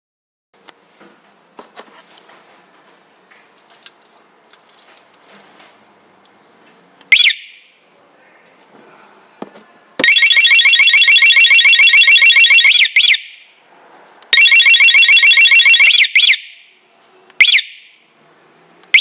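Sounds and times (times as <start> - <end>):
light clicks and handling noise: 1.6 - 7.1
alarm chirp: 7.1 - 7.7, 10.0 - 13.6, 14.4 - 16.7, 17.4 - 18.0
alarm siren warbling: 10.0 - 13.5, 14.4 - 16.7, 17.4 - 17.9.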